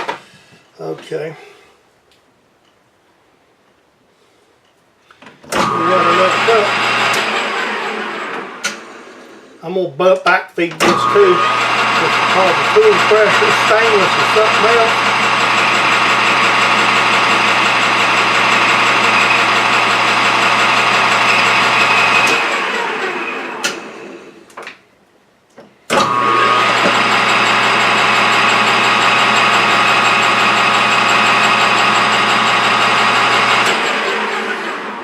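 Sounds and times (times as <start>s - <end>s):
lathe motor humming and whining: 5.6s - 9.4s, 10.8s - 24.4s, 25.9s - 35.0s
clicks: 8.3s - 8.9s.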